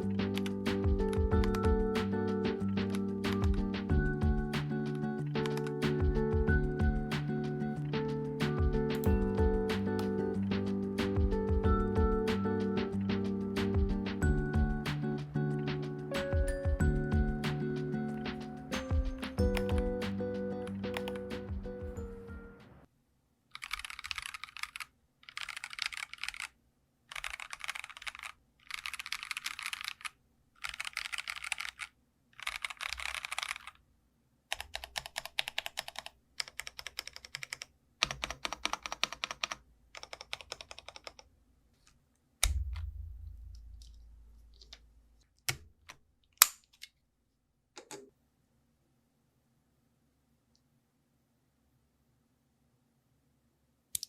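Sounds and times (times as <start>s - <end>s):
mechanical keyboard typing: 0.1s - 2.1s, 2.8s - 3.7s, 5.3s - 6.5s, 18.9s - 19.9s, 20.6s - 21.3s, 23.6s - 26.5s, 27.1s - 33.8s, 34.5s - 41.3s
dull low thump: 42.4s - 44.4s.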